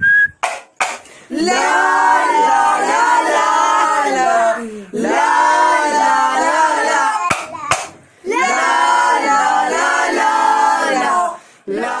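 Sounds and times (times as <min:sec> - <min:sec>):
sharp hand claps: 0:00.4 - 0:01.1, 0:07.2 - 0:08.0
men singing unaccompanied: 0:01.3 - 0:07.2, 0:08.3 - 0:12.0.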